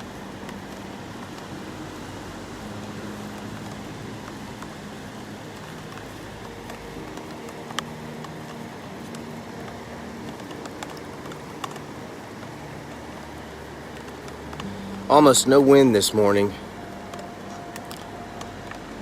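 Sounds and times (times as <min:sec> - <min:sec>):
raindrops tapping on plastic: 0:00.0 - 0:19.0
steady rain falling: 0:00.0 - 0:19.0.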